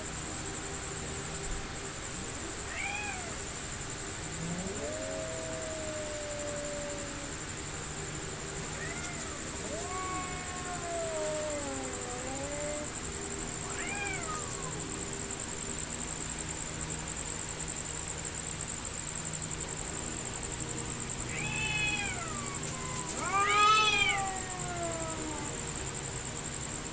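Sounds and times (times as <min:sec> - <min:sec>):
cats caterwauling: 0:02.6 - 0:03.6, 0:04.2 - 0:15.0, 0:21.2 - 0:25.9.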